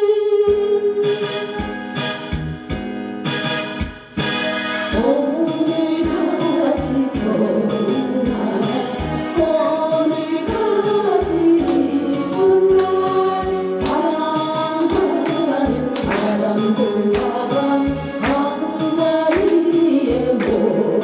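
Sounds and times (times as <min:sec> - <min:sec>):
band accompaniment: 0:01.0 - 0:21.0
group singing gospel: 0:06.0 - 0:21.0.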